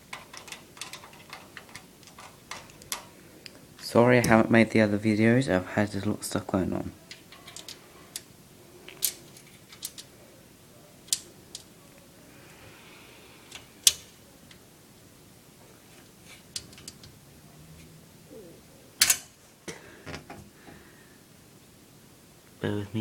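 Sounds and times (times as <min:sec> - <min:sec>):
screwdriver clicking on metal: 0:00.1 - 0:03.1.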